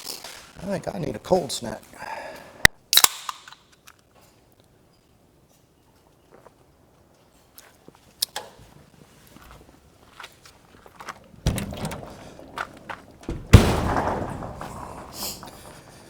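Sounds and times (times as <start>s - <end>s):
drink can opening crack and hiss: 2.9s - 4.0s
clicks and knocks of handling: 11.0s - 16.0s
thud: 11.3s - 16.0s.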